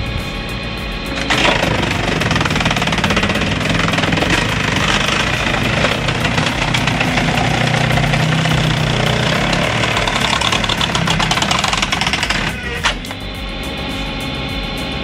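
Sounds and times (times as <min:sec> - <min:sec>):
heavy machine engine running: 0:00.0 - 0:15.0
rapid clatter of knocks: 0:01.2 - 0:13.1.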